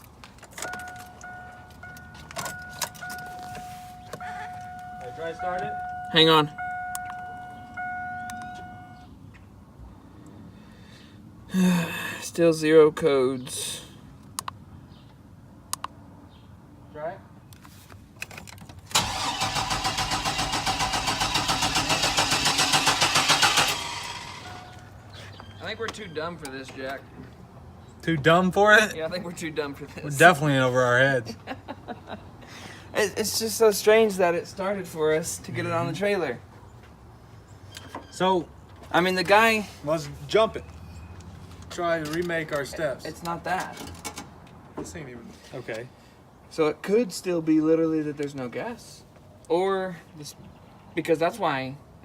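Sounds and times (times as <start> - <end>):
keys jingling: 0.3 - 6.1
electronic warning tone: 0.7 - 9.1
car engine cranking: 18.8 - 24.8.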